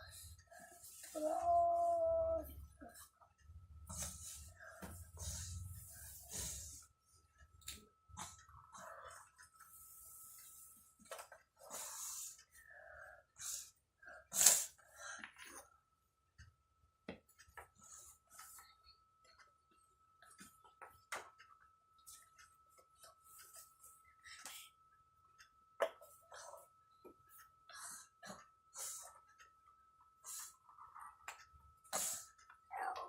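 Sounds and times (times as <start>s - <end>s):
child sniffling and breathing: 3.9s - 6.9s.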